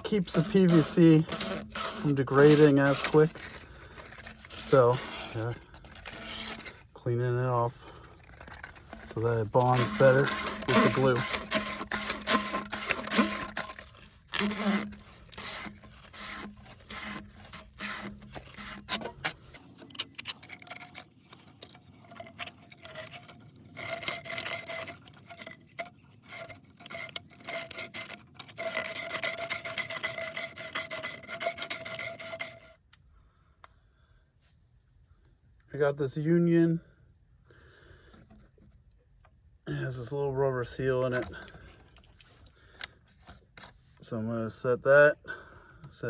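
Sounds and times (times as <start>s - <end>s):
rubbing on plastic pipe: 0.0s - 32.8s.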